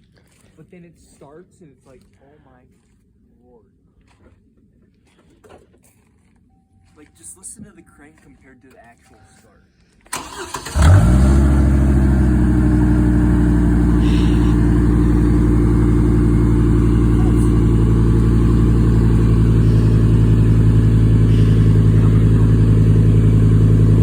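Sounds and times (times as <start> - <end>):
car engine idling: 10.1 - 24.0.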